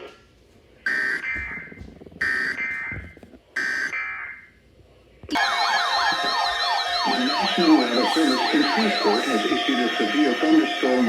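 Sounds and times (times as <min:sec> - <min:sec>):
warbling attention tone: 0:05.3 - 0:11.0
harsh digital data bursts: 0:05.4 - 0:11.0.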